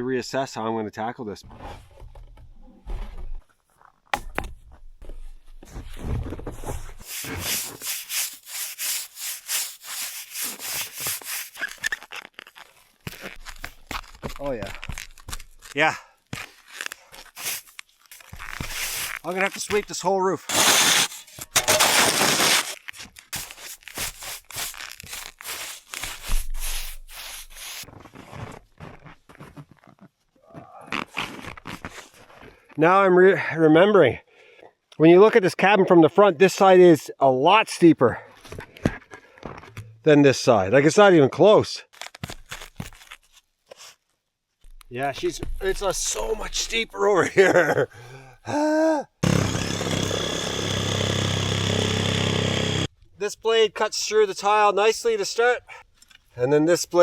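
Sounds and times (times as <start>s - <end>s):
faint scuffs and scrapes: 4.6s - 20.0s, 22.4s - 32.6s, 42.0s - 46.8s
brush sweeping snow off roof tiles: 6.8s - 11.9s, 17.3s - 19.9s, 20.5s - 22.8s, 23.4s - 28.0s.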